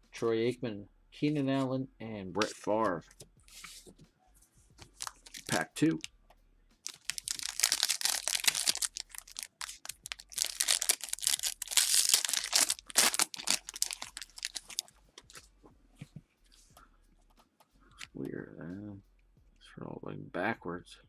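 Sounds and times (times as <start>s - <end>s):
card pack wrapper crinkling: 4.8s - 5.7s, 6.9s - 15.4s.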